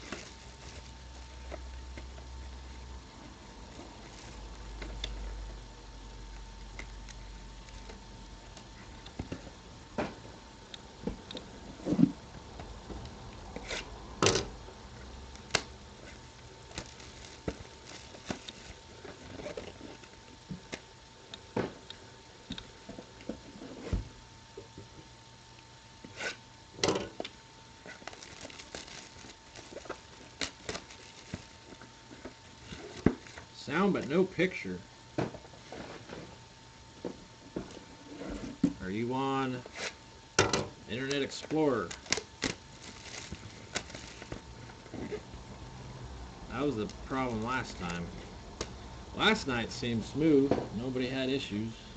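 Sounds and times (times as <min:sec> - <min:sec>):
faint steady hum: 0:00.0 - 0:51.9
card packs handled on table: 0:15.4 - 0:20.9, 0:27.8 - 0:33.6, 0:41.2 - 0:45.2.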